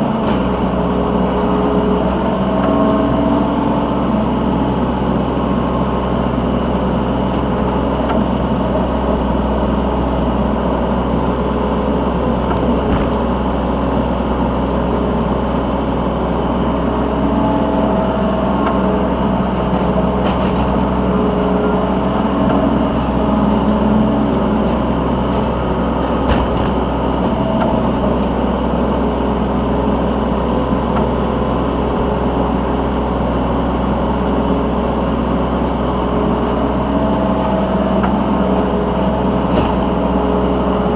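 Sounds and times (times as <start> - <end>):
excavator diesel engine: 0.0 - 40.9.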